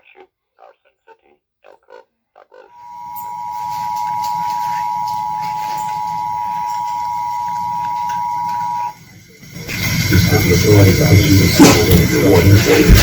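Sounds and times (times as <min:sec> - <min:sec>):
low background hum: 0:02.8 - 0:09.0
two-tone alert beep: 0:02.8 - 0:09.0.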